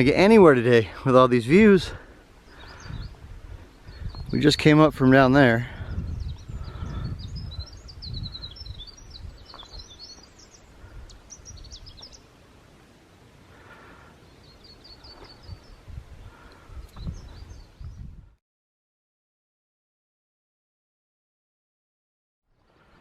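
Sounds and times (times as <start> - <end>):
songbirds chirping: 0.0 - 18.4, 22.5 - 23.0
bird trill: 6.0 - 12.3, 14.2 - 18.0.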